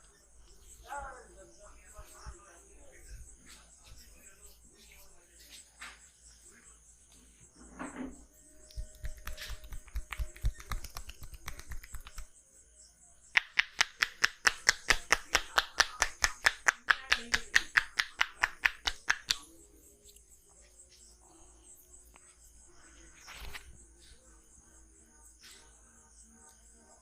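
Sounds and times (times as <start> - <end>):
sharp slaps of hands on body: 8.7 - 12.3, 13.3 - 19.5.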